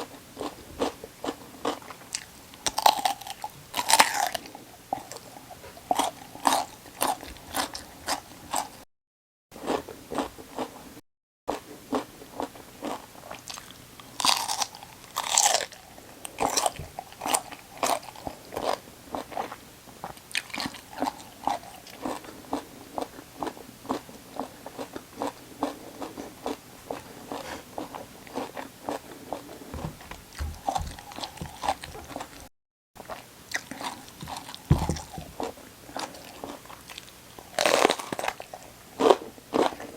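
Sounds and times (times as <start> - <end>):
chewing raw vegetables: 0.0 - 8.8, 11.5 - 39.9.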